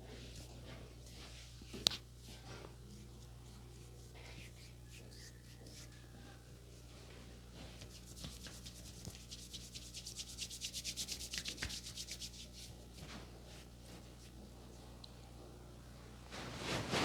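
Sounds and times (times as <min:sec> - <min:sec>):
hands rubbing over head: 0:07.8 - 0:14.4.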